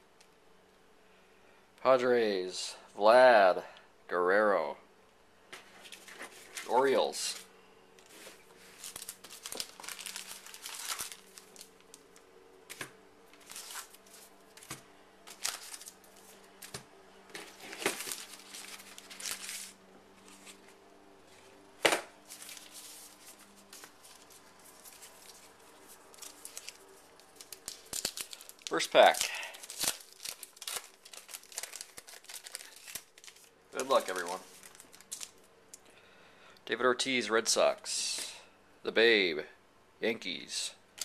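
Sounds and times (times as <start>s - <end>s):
faint steady hum: 0.0s - 41.0s
wrapper crinkling and tearing: 8.0s - 20.6s, 22.2s - 35.5s.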